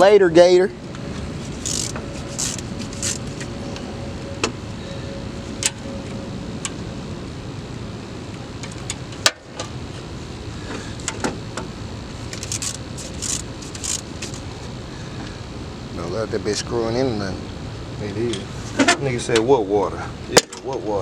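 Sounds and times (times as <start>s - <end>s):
steady background noise: 0.0s - 21.0s
hand tools clicking and knocking: 1.6s - 3.5s, 12.4s - 14.4s.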